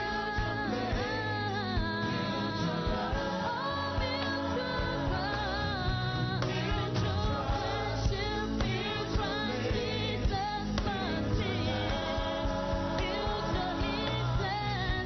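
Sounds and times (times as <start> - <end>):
band with bass and drums: 0.0 - 15.0
voices singing with vibrato: 0.0 - 15.0.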